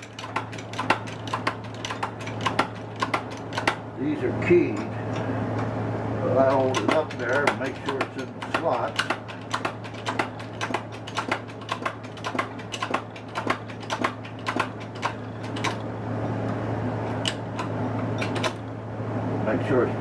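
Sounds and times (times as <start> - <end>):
sharp metal clicks and taps: 0.0 - 3.8, 6.6 - 15.8
low machine hum: 0.0 - 20.0.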